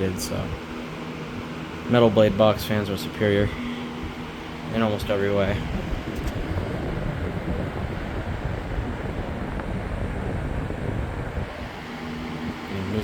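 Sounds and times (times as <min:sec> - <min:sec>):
box fan running: 0:00.0 - 0:13.0
wind rumble on microphone: 0:03.4 - 0:13.0.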